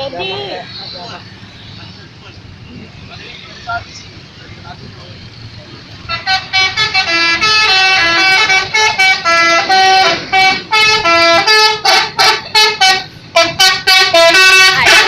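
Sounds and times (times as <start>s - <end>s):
multi-tone musical bus horn: 6.0s - 15.0s.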